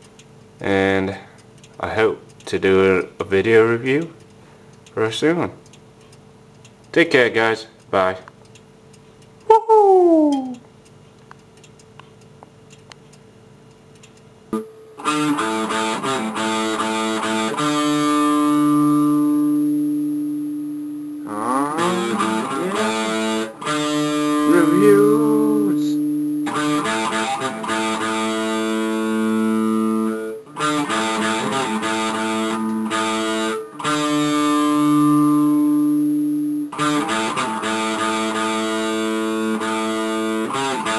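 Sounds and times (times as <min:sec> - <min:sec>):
guitar music: 0:14.6 - 0:40.9.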